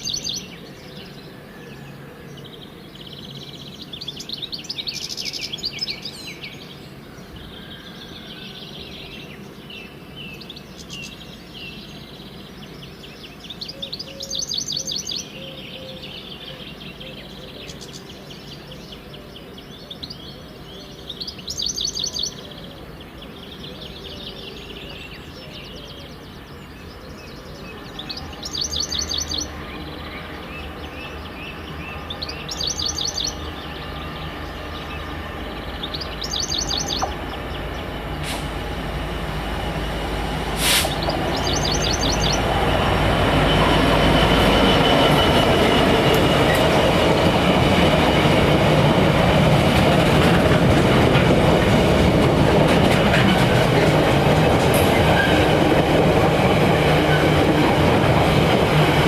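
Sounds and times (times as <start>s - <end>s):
diesel train passing: 0.0s - 59.0s
bird trilling: 32.0s - 38.0s, 40.8s - 46.8s.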